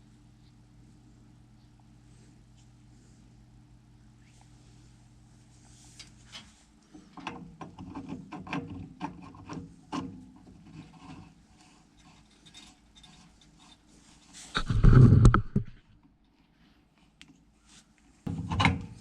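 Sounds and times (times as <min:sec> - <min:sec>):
rough scrape: 0:10.6 - 0:15.8.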